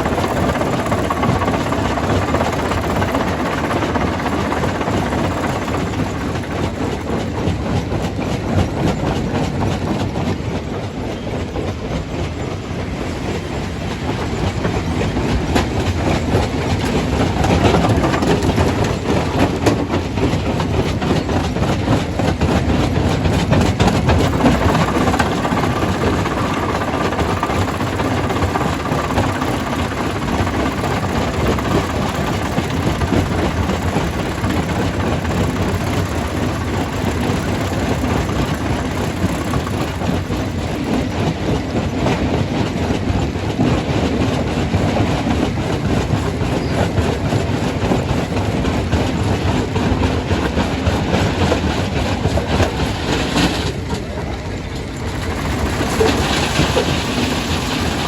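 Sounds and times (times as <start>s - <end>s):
stone crusher crushing rock: 17.3s - 19.8s, 24.0s - 40.7s.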